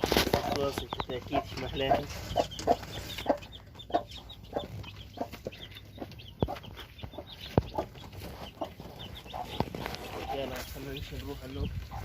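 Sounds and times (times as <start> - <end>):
chickens clucking: 0.0 - 12.0
chicks peeping: 0.0 - 12.0.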